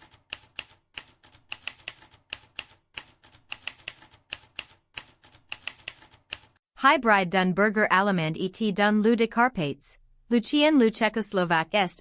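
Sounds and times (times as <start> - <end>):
typing key clicks: 0.0 - 6.5.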